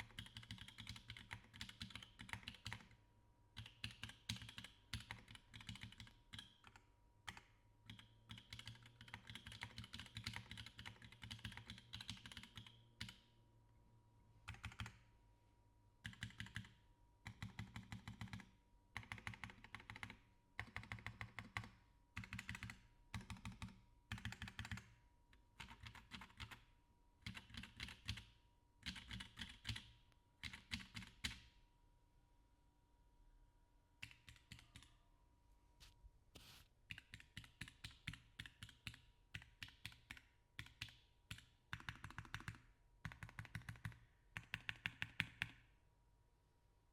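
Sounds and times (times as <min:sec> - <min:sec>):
mechanical keyboard typing: 0:00.0 - 0:03.0, 0:03.6 - 0:13.2, 0:14.5 - 0:15.0, 0:16.0 - 0:24.9, 0:25.6 - 0:26.6, 0:27.2 - 0:31.4, 0:34.0 - 0:34.9, 0:36.9 - 0:45.6.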